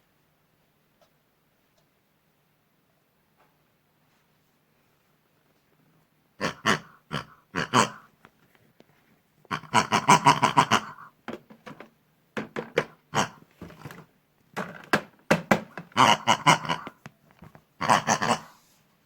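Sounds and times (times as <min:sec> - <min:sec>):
pigs grunting: 0:06.4 - 0:08.1, 0:09.5 - 0:11.2, 0:12.8 - 0:13.5, 0:15.8 - 0:17.0, 0:17.8 - 0:18.6.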